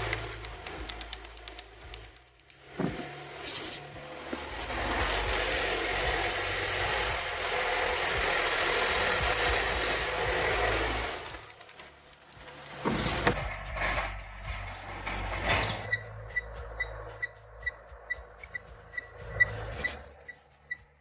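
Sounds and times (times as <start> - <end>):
metal lathe cutting: 2.8 - 11.9.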